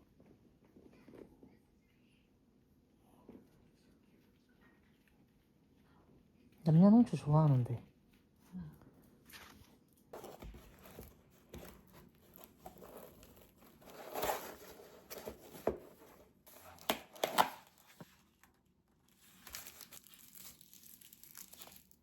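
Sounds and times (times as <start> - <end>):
packaging crinkling and tearing: 10.2 - 22.0.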